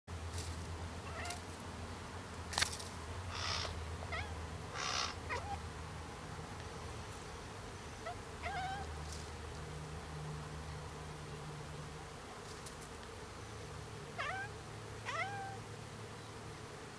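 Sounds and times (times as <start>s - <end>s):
cat chirping and trilling: 1.1s - 1.4s, 3.4s - 5.6s, 8.0s - 8.9s, 14.2s - 14.5s, 15.1s - 15.6s.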